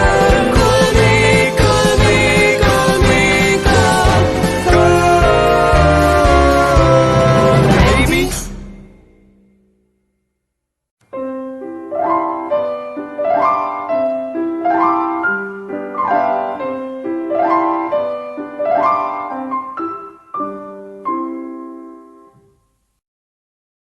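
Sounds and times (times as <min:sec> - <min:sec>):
solo piano arpeggios: 0:11.1 - 0:22.4.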